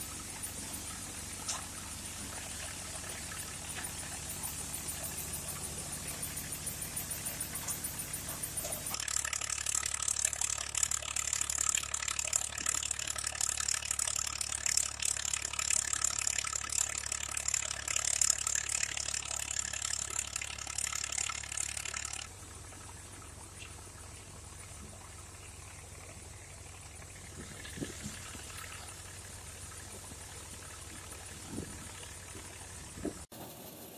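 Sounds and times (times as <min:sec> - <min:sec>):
machine clicking and rattling: 0:03.2 - 0:22.3.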